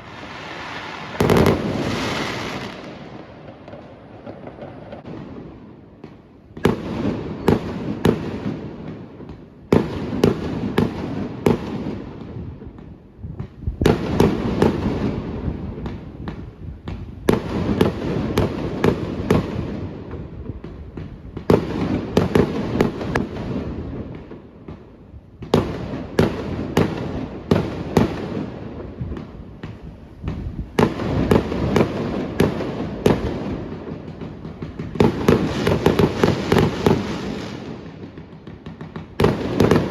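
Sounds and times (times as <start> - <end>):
fireworks crackle: 0.0 - 5.4, 25.5 - 39.9
fireworks bangs: 0.0 - 39.9.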